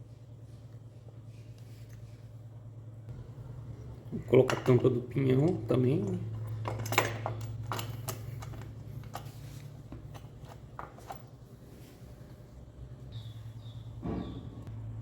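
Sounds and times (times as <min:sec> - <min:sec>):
steady low hum: 0:00.0 - 0:15.0
metal parts clicking and tapping: 0:04.3 - 0:11.3.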